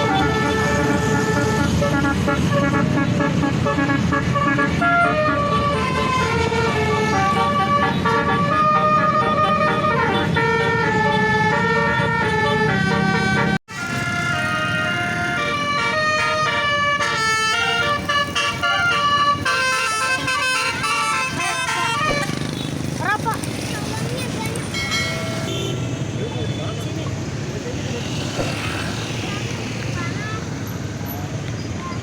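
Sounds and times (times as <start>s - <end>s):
bus musical horn playing tune: 0.0s - 22.2s.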